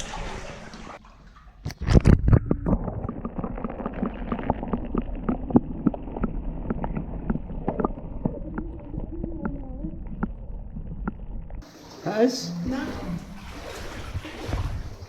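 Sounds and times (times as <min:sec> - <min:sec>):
footsteps wading through water: 0:00.0 - 0:01.9, 0:12.6 - 0:15.0
knocks and splashes: 0:00.0 - 0:15.0.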